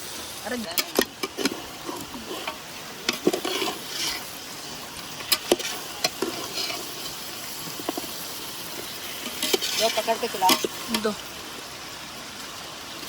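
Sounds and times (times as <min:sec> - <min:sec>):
meat sizzling in a pot: 0:00.0 - 0:13.0
spoon scraping a pot: 0:00.8 - 0:04.4, 0:05.2 - 0:10.8.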